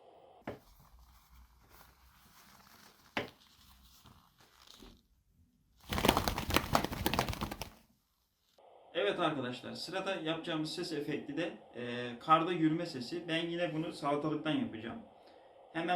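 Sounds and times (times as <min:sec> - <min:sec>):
leather gloves flapping: 0:00.6 - 0:05.0, 0:05.8 - 0:07.9.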